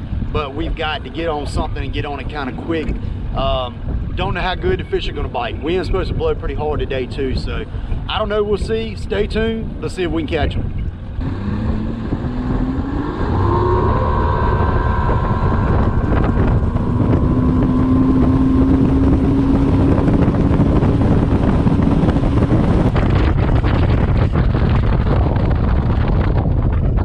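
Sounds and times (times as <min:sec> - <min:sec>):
wind buffeting microphone: 0:00.0 - 0:27.0
outboard motor throttling up: 0:10.9 - 0:27.0.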